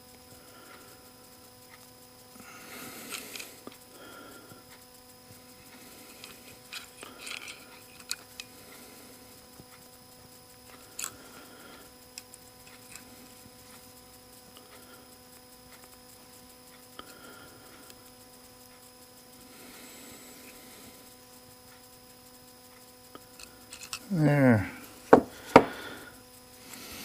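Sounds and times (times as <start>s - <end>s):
small metal clicks: 23.3s - 24.0s.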